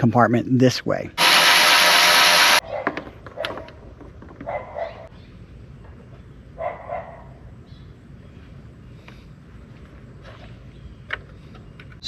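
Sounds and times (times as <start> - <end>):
dog barking: 2.6 - 3.7, 4.4 - 5.1, 6.6 - 7.4.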